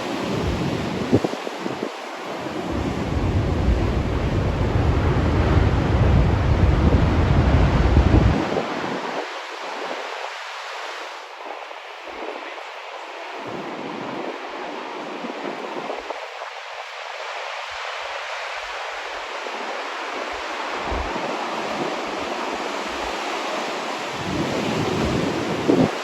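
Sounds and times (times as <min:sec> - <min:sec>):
wind buffeting microphone: 0:00.0 - 0:09.9, 0:20.2 - 0:26.0
ocean surf breaking: 0:00.0 - 0:26.0.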